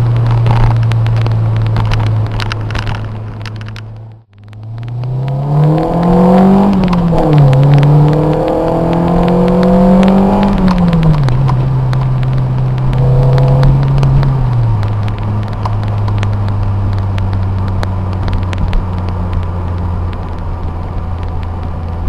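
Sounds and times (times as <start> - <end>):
four-cylinder engine revving: 4.5 - 11.4, 12.9 - 14.5.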